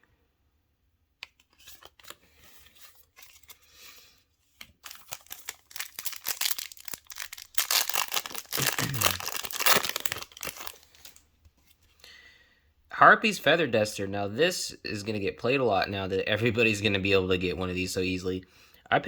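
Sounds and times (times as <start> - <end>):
foil wrapper crinkling and tearing: 4.6 - 11.2.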